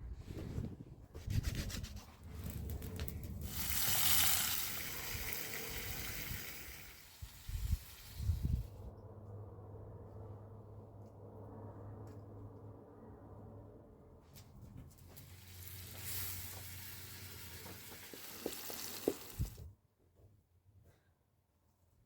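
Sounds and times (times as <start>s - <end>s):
crackly scrapes: 0.0s - 5.4s.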